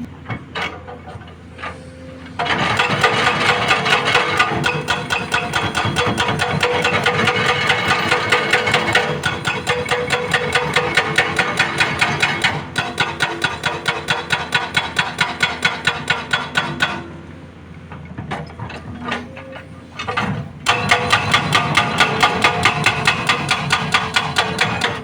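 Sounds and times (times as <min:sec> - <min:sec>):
excavator engine running: 0:00.0 - 0:16.3, 0:17.0 - 0:25.0
hydraulic breaker hammer pounding rock: 0:02.3 - 0:17.2, 0:20.0 - 0:25.0.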